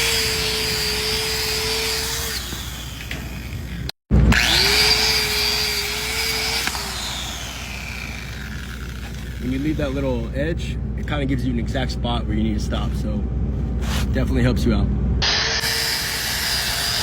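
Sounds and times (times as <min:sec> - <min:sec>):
electric grinder whining: 0:00.0 - 0:10.0, 0:15.2 - 0:17.0.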